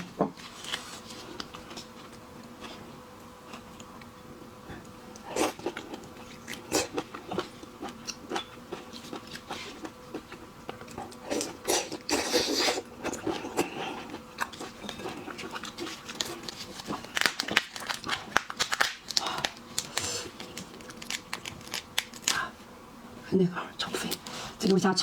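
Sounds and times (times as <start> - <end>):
shellfish shells cracking: 14.5 - 22.4.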